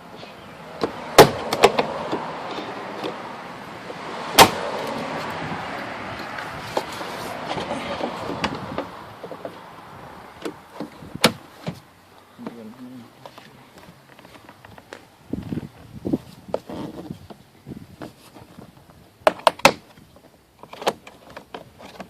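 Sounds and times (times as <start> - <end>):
plastic scraping: 16.2 - 17.4.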